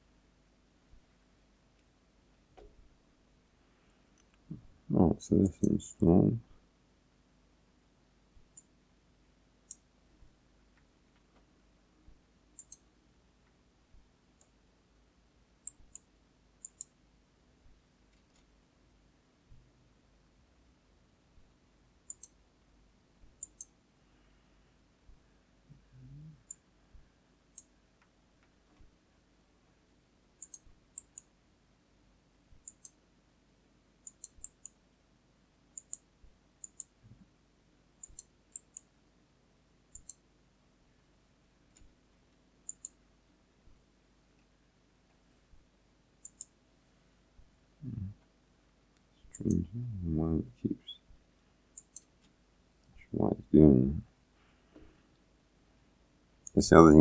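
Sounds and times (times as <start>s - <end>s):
computer mouse clicks: 12.6s - 12.8s, 15.6s - 17.0s, 18.1s - 18.5s, 22.1s - 22.4s, 23.3s - 23.8s, 27.5s - 27.7s, 30.4s - 31.3s, 32.6s - 33.0s, 34.0s - 34.8s, 35.8s - 37.0s, 38.0s - 38.9s, 39.9s - 40.2s, 42.6s - 43.0s, 46.2s - 46.5s, 49.3s - 49.6s, 51.8s - 52.4s
computer control clicks: 49.3s - 49.6s.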